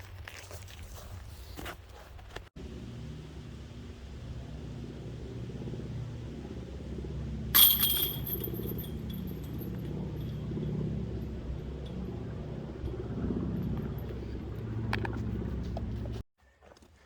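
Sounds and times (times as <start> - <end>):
steady low rumble: 2.6 - 16.3
metal chains clashing and jingling: 7.6 - 10.4.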